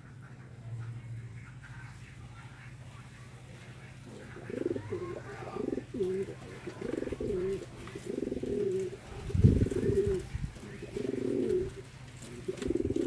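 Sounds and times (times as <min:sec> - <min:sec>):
pigeon cooing: 0:03.3 - 0:13.0.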